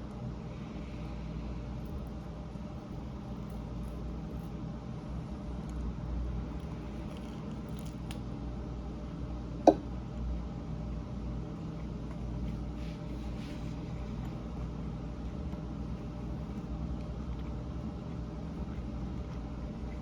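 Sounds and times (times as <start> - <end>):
steady low hum: 0.0 - 20.0
chewing meat: 5.4 - 8.3, 10.9 - 20.0.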